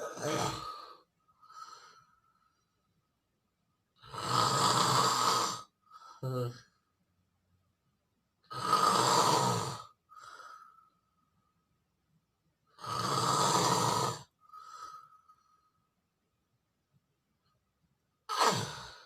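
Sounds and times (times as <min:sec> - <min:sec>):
person snoring: 0:00.0 - 0:02.0, 0:04.0 - 0:06.6, 0:08.5 - 0:10.0, 0:12.8 - 0:15.1, 0:18.3 - 0:19.0.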